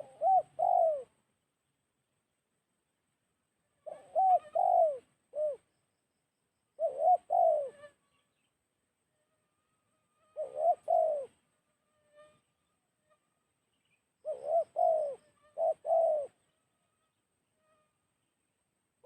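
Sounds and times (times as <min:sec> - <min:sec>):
dove cooing: 0:00.0 - 0:01.2, 0:03.8 - 0:05.7, 0:06.8 - 0:07.9, 0:10.3 - 0:11.4, 0:14.2 - 0:16.5.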